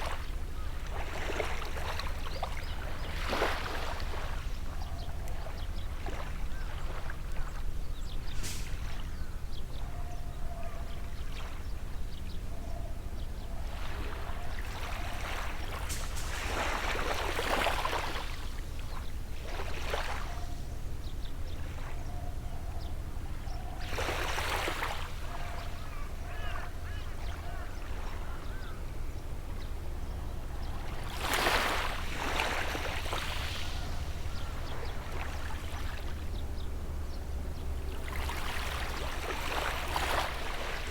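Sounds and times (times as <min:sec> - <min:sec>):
bird calling: 0:00.0 - 0:40.9
sea waves washing onto shore: 0:14.0 - 0:20.3, 0:30.4 - 0:37.0.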